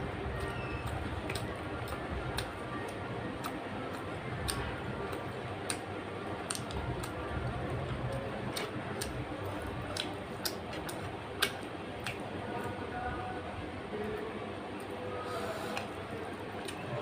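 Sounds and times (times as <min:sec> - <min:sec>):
steady low hum: 0:00.0 - 0:17.0
chewing with mouth clicks: 0:07.9 - 0:12.2.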